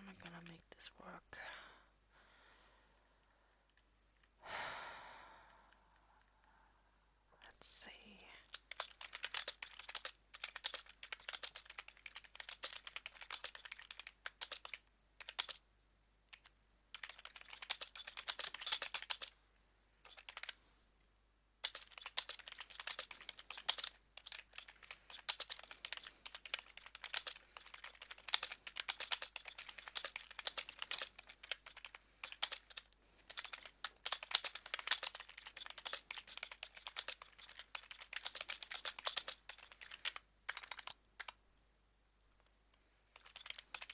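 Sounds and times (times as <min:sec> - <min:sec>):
typing on computer keyboard: 0:08.4 - 0:15.6, 0:16.3 - 0:19.4, 0:20.0 - 0:20.6, 0:21.6 - 0:41.4, 0:43.1 - 0:43.9.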